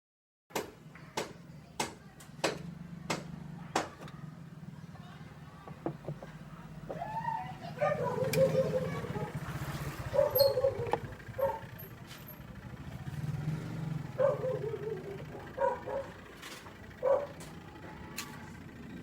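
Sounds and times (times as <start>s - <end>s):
dog barking in short yelps: 10.1s - 11.7s, 14.2s - 16.2s.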